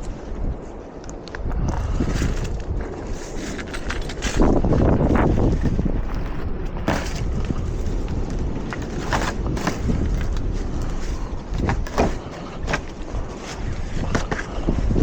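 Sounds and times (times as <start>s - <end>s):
wind buffeting microphone: 0.0s - 15.0s
knocks and clanks: 3.4s - 14.6s.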